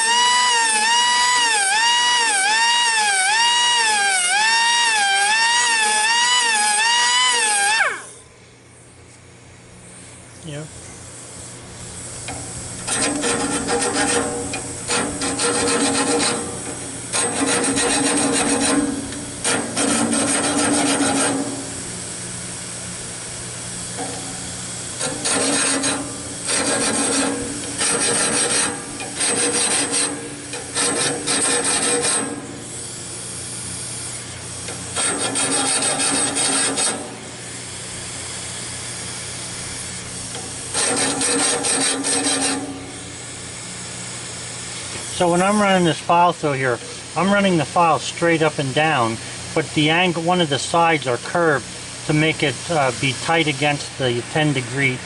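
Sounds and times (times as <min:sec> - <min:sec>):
file rasping on saw blade: 0:12.9 - 0:16.6, 0:17.2 - 0:18.9, 0:19.5 - 0:21.4, 0:25.1 - 0:32.3, 0:35.0 - 0:37.0.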